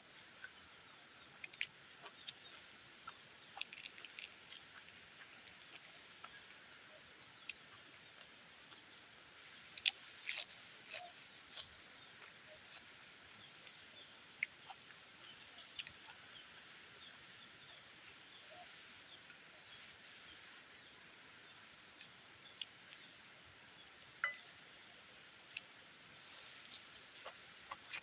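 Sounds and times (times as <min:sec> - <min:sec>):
faint steady hiss: 0:00.0 - 0:28.0
wet chewing smacks: 0:01.2 - 0:02.2, 0:03.6 - 0:06.4, 0:09.8 - 0:13.5.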